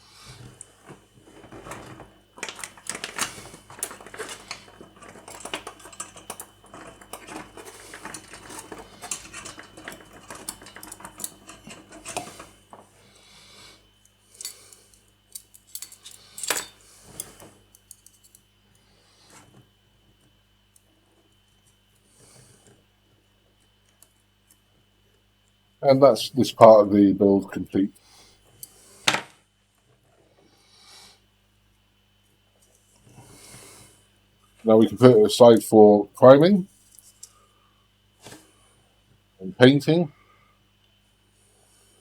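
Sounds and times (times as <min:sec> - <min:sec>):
plastic parts clicking and clattering: 0:00.8 - 0:12.8.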